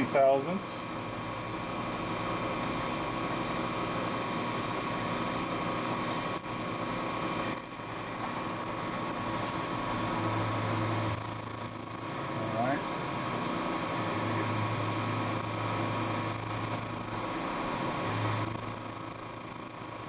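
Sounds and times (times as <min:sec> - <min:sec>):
milling machine running: 0:00.8 - 0:20.0
thin high whine: 0:00.8 - 0:20.0.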